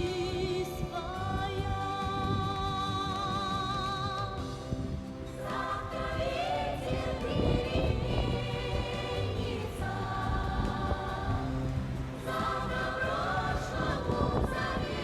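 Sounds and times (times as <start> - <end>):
slow song accompaniment: 0.0 - 15.0
wordless choir singing: 4.2 - 15.0.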